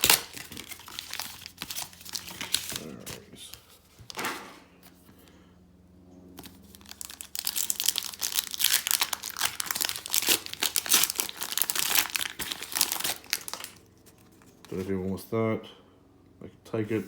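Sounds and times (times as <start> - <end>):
foil wrapper tearing and crinkling: 0.0 - 3.2, 6.4 - 14.6.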